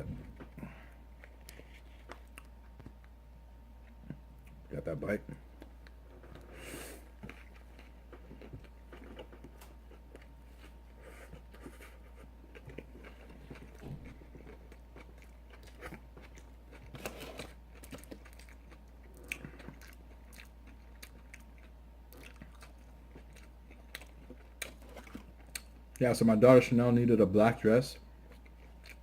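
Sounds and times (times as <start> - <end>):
low hum: 0.0 - 22.2
close chewing: 7.1 - 25.9, 28.3 - 29.0.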